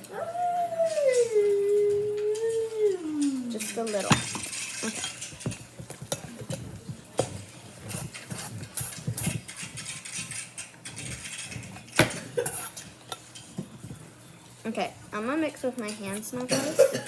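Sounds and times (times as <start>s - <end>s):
spoon scraping bowl: 3.5s - 13.6s.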